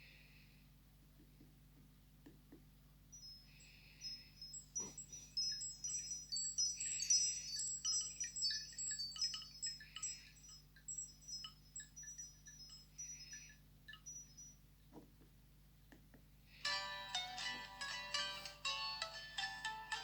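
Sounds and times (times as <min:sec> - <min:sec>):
chime-like phone ringtone: 0:16.6 - 0:20.0.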